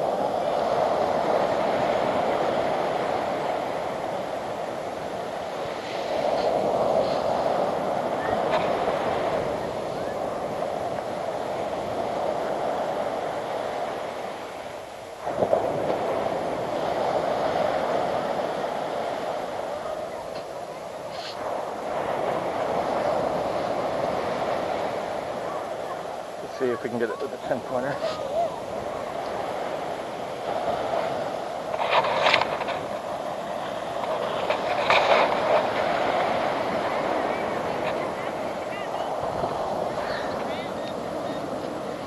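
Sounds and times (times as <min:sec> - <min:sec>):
surf rushing on beach: 0:00.0 - 0:42.0
wind noise: 0:00.0 - 0:42.0
digging into beach sand: 0:05.6 - 0:09.4, 0:20.3 - 0:21.6, 0:26.7 - 0:29.9.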